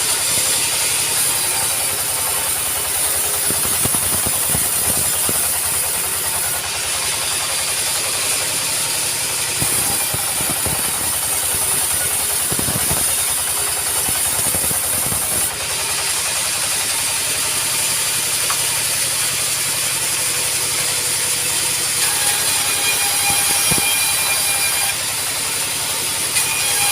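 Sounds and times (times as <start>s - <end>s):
sawmill engine pulse: 0.0s - 26.9s
loud high hiss: 7.2s - 15.8s.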